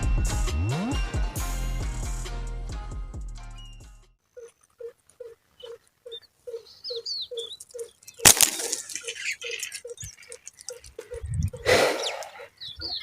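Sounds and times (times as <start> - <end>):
small birds chirping: 3.6 - 13.0
rustling: 7.4 - 11.6.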